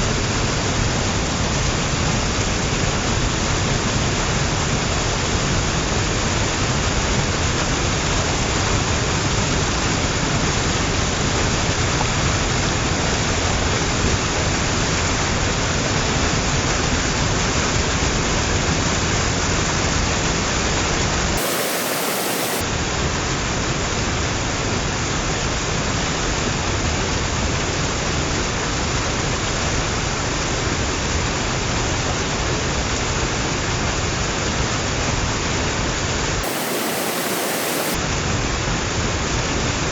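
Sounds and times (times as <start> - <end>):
small waterfall splashing: 21.4 - 22.6, 36.4 - 38.0.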